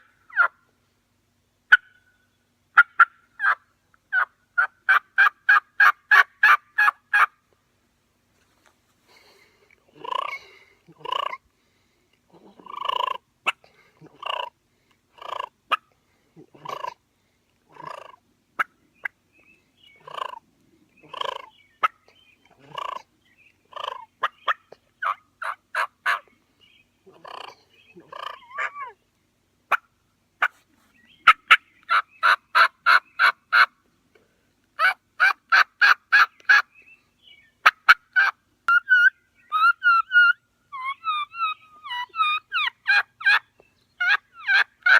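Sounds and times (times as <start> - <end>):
turkey call yelps: 0.0 - 0.6, 1.7 - 2.2, 2.8 - 7.3, 12.6 - 14.5, 15.2 - 15.8, 23.7 - 26.3, 27.1 - 29.0, 31.2 - 33.7, 34.8 - 36.6, 37.6 - 44.9.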